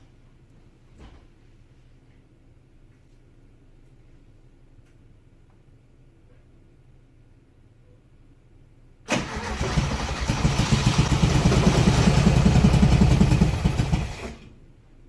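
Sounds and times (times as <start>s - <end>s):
car engine cranking on starter: 9.1s - 14.5s.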